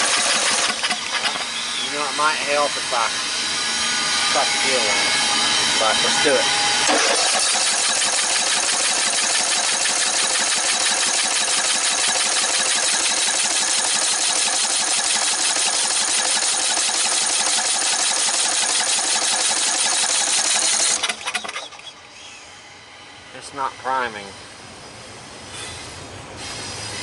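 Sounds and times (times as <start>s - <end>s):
engine cranking without starting: 0.0s - 1.6s, 6.8s - 22.0s.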